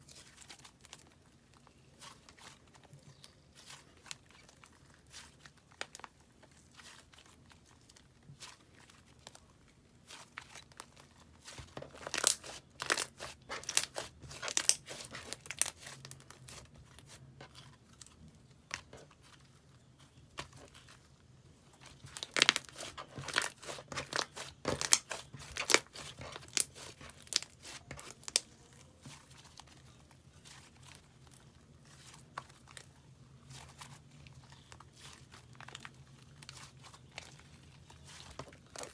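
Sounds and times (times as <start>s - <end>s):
slime crackling and popping: 11.6s - 16.7s, 22.0s - 30.0s.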